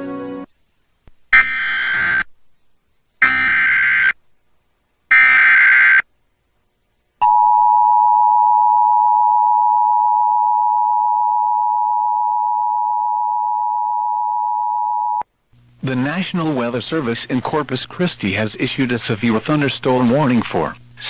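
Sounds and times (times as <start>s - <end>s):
screechy digital header burst: 1.4s - 2.3s.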